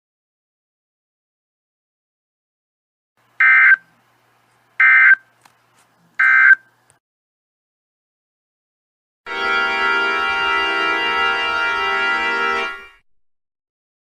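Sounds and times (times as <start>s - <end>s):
digital data tone bursts: 3.4s - 3.8s.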